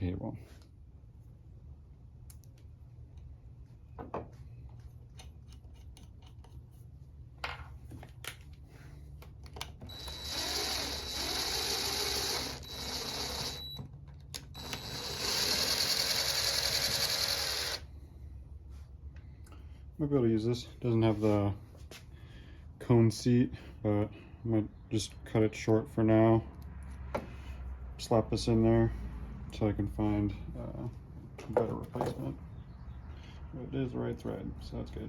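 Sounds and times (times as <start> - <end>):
tools and parts clicking: 5.1 - 6.7
small power tool whining: 9.8 - 17.9.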